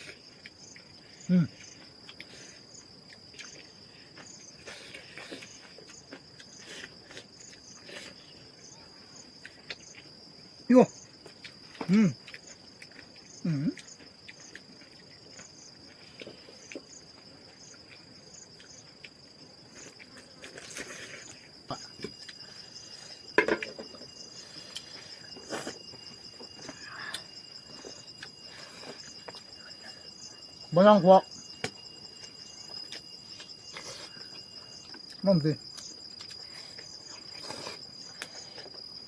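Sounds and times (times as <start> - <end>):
insects chirping: 0.0 - 39.0
short voice sounds: 11.8 - 12.2.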